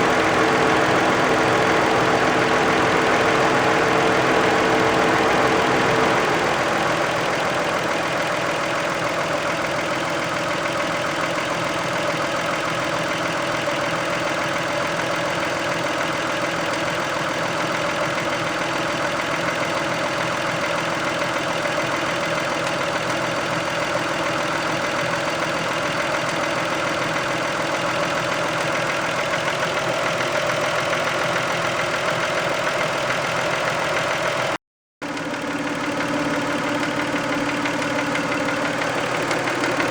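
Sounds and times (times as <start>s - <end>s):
car engine idling: 0.0s - 19.8s, 35.0s - 39.9s.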